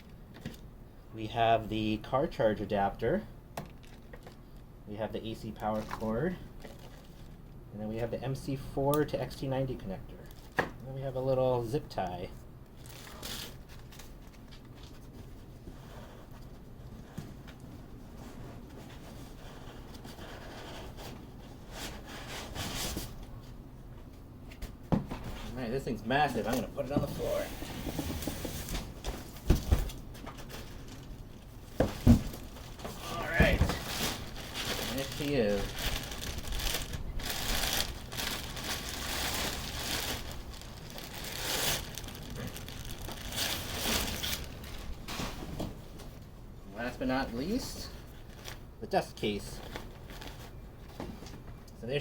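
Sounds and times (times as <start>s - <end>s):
packaging rustling and scraping: 12.8s - 23.6s, 25.1s - 46.2s, 49.6s - 51.4s.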